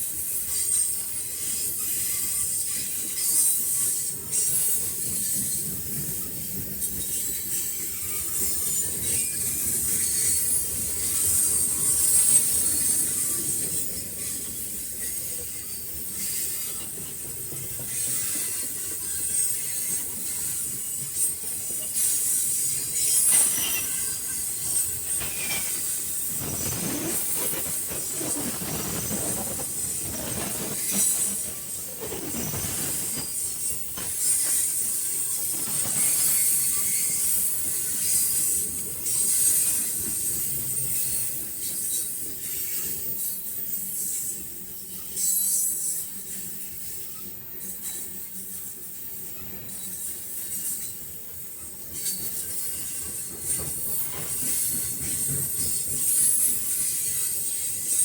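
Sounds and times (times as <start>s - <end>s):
freight train rolling by: 0.0s - 58.0s
wheels squealing high-pitched: 6.8s - 46.0s
rail clatter: 16.2s - 39.2s.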